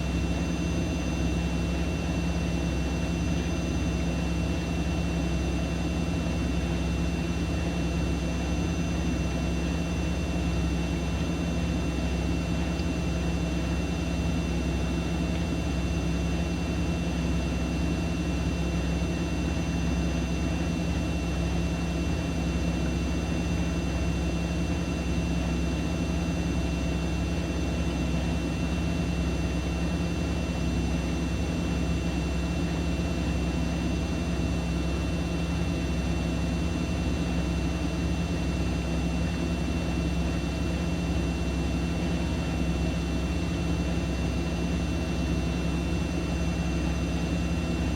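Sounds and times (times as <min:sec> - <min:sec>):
washing machine running: 0:00.0 - 0:47.9.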